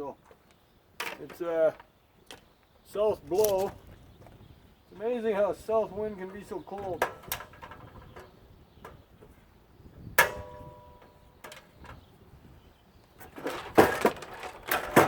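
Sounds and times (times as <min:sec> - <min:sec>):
metal parts clattering: 0:13.4 - 0:15.0.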